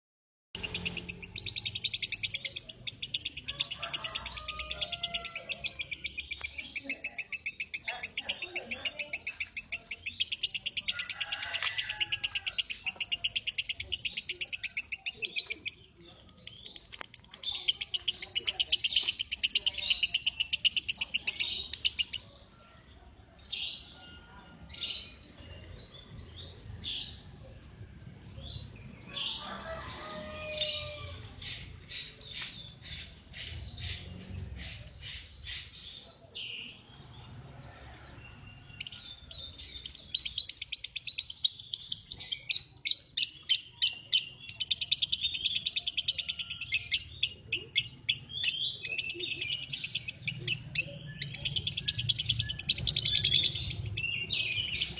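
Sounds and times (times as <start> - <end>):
lovebird chirping and trilling: 0.6 - 22.3, 38.3 - 54.9.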